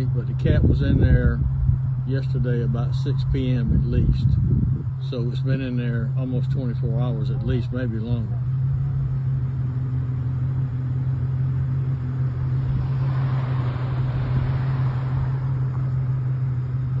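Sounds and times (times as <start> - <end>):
vehicle engine humming: 0.0 - 17.0
rush of noise: 12.3 - 16.0.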